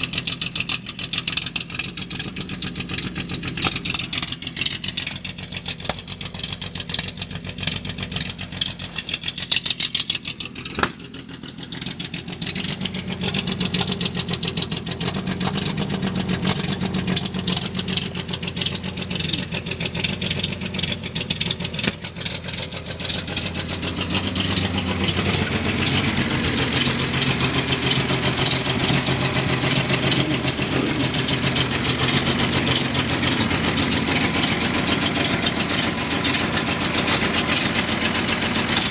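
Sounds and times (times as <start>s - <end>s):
car engine idling roughly: 0.0s - 38.9s
sharp click: 21.8s - 22.0s.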